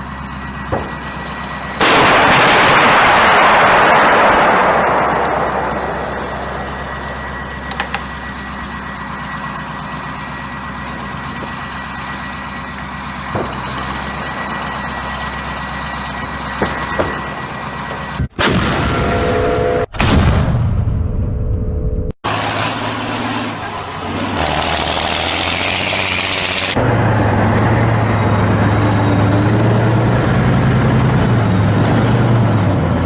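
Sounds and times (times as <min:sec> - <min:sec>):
artillery gun blast rumbling: 0:01.8 - 0:07.3, 0:18.2 - 0:21.3.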